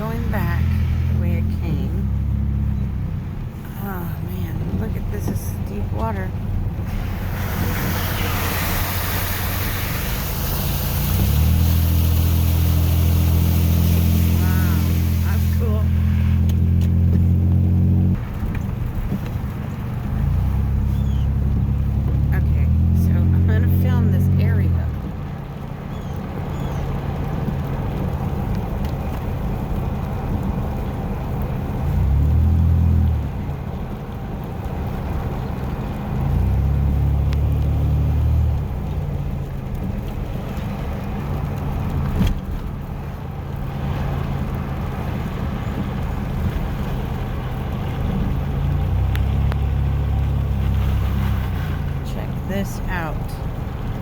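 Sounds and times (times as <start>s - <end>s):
truck engine and road rumble: 0.0s - 54.0s
wet tyres hissing: 6.5s - 23.0s, 33.9s - 54.0s.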